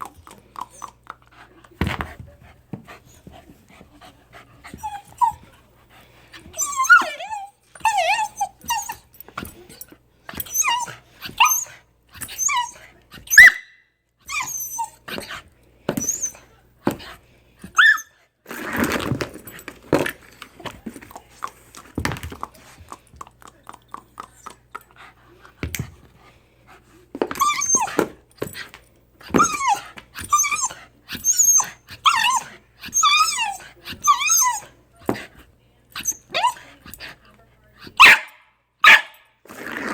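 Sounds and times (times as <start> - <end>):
dog whining and yipping: 4.8 - 5.4, 6.6 - 9.1, 10.3 - 13.7, 14.3 - 15.2, 16.0 - 16.4, 17.7 - 18.1, 27.3 - 28.0, 29.3 - 34.7, 36.0 - 36.6.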